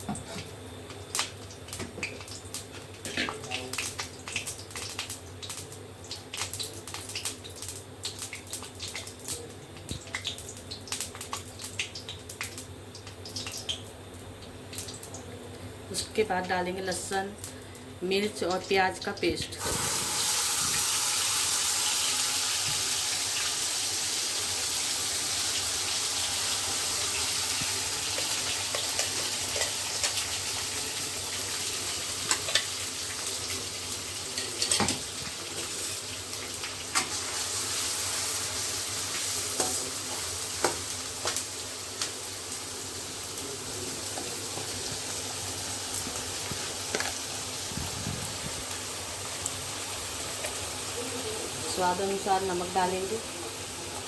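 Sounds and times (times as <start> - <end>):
paste sizzling in hot oil: 19.6 - 54.0.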